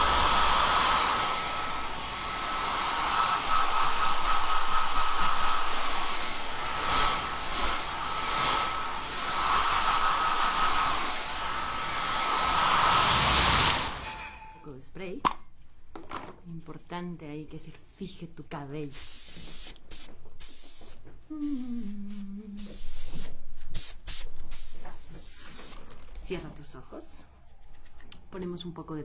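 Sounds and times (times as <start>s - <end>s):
hair dryer blowing: 0.0s - 14.2s, 19.3s - 25.8s.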